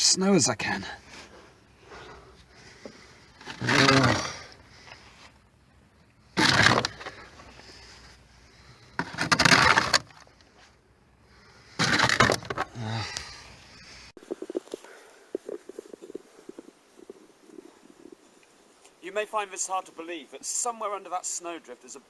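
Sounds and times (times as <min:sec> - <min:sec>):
snow shovel scraping snow: 0:03.4 - 0:04.5, 0:06.4 - 0:08.1, 0:09.0 - 0:10.2, 0:11.8 - 0:12.6.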